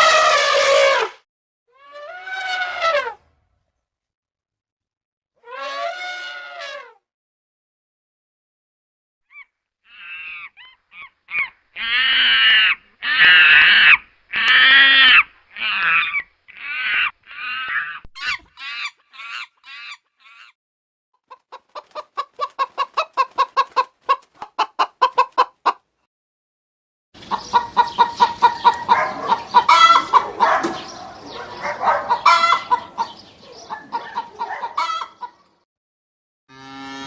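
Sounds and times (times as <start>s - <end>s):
chickens calling: 9.3s - 20.6s, 21.2s - 25.8s, 27.2s - 35.6s
chickens clucking: 18.2s - 20.5s, 21.2s - 25.8s, 27.2s - 35.6s.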